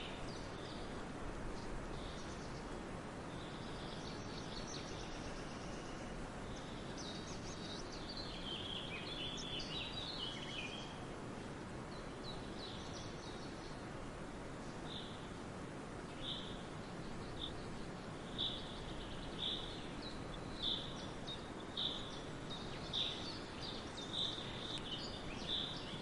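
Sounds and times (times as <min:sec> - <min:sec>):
background hiss: 0:00.0 - 0:26.0
birds chirping: 0:01.6 - 0:11.0, 0:16.0 - 0:26.0.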